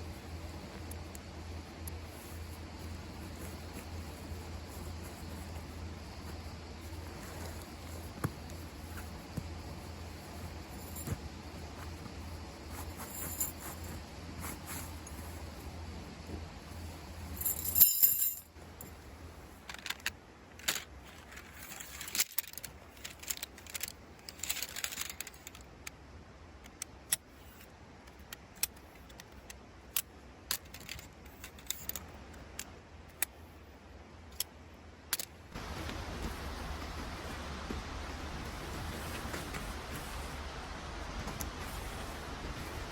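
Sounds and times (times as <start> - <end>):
even rushing hiss: 35.6 - 42.9.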